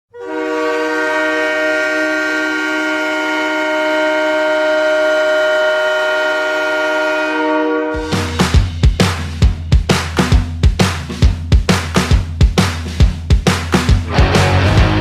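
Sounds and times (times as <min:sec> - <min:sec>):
goal horn blast: 0:00.1 - 0:08.4.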